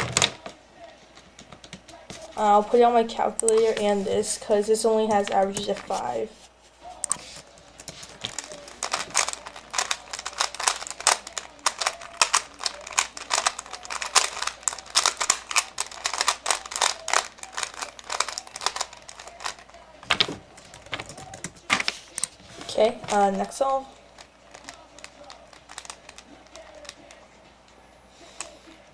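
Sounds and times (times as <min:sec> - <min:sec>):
plastic clicking and clacking: 0:00.0 - 0:02.2, 0:07.0 - 0:23.3, 0:24.1 - 0:27.8.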